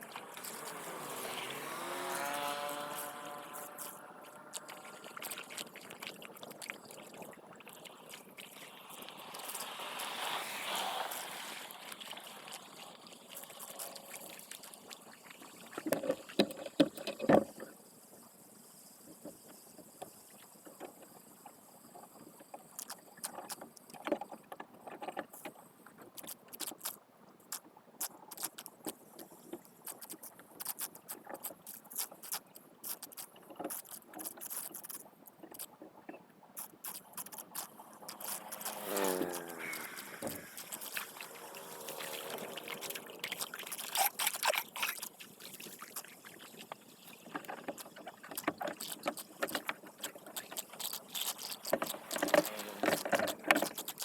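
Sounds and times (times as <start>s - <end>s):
wet grass rustling: 0.0s - 7.0s, 8.1s - 15.1s, 36.6s - 54.0s
water splashing: 0.0s - 17.2s, 36.6s - 54.0s.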